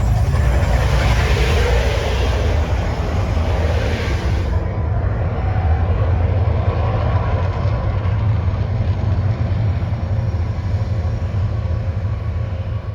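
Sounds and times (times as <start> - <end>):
deep steady rumble: 0.0 - 6.8.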